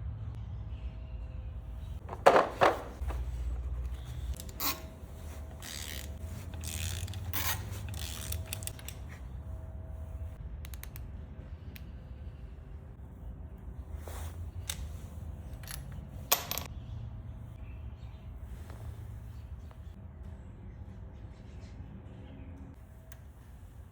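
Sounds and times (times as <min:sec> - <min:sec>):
metal tools knocking: 0:02.1 - 0:03.3
metal clicks and scrapes: 0:02.1 - 0:09.2.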